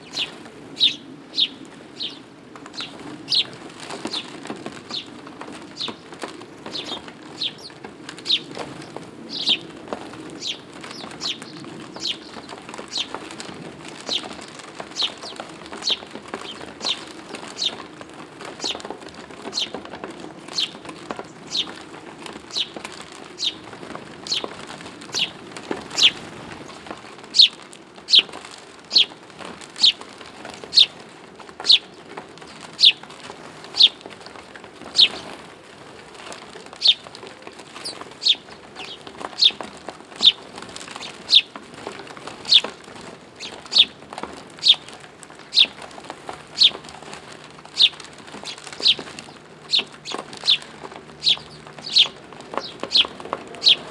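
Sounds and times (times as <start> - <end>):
bird chirping: 0.0 - 2.2, 2.8 - 4.3, 6.7 - 8.6, 9.3 - 9.6, 10.4 - 13.2, 14.0 - 17.8, 18.6 - 18.8, 19.5 - 19.8, 20.5 - 21.8, 22.5 - 22.7, 23.4 - 23.7, 24.3 - 24.5, 25.1 - 28.3, 28.9 - 29.1, 29.8 - 30.0, 30.7 - 30.9, 31.6 - 31.9, 32.5 - 33.0, 33.7 - 34.0, 34.9 - 35.2, 36.8 - 37.1, 37.8 - 39.6, 40.2 - 41.5, 42.4 - 42.7, 43.4 - 44.0, 44.6 - 45.8, 46.5 - 47.1, 47.7 - 53.9.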